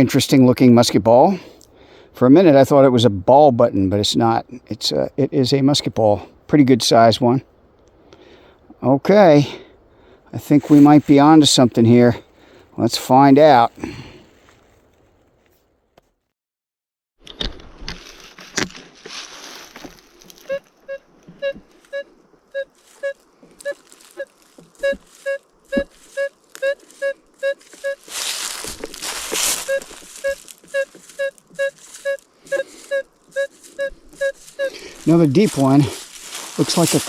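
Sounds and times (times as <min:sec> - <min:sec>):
rustling of leaves and brush: 0:10.5 - 0:12.6, 0:13.6 - 0:15.8, 0:17.5 - 0:37.0
metal detector beeping: 0:20.4 - 0:37.0.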